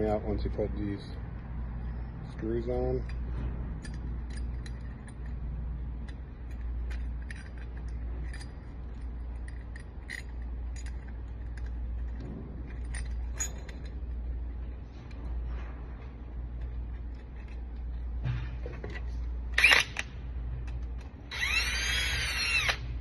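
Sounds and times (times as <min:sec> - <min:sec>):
steady low hum: 0:00.0 - 0:23.0
metallic clicks of lock parts: 0:03.0 - 0:05.4, 0:06.0 - 0:15.3, 0:16.6 - 0:21.7.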